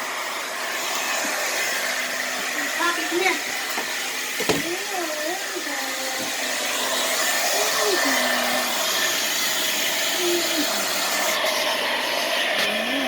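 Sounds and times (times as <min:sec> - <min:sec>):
blow dryer running: 0:00.0 - 0:13.0.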